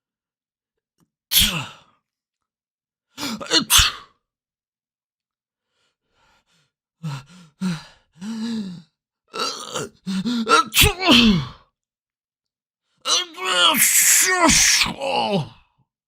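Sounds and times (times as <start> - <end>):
person sneezing: 1.3 - 1.8, 3.2 - 4.2, 10.5 - 11.5
voiced gasps: 5.6 - 9.0, 9.9 - 10.5.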